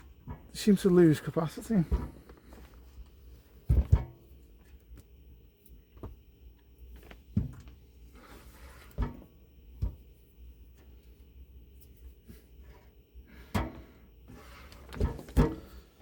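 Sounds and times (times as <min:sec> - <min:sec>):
dull knocks of parts set down: 0:03.6 - 0:04.8, 0:07.0 - 0:07.8, 0:08.8 - 0:10.1, 0:13.4 - 0:13.9, 0:14.8 - 0:15.9.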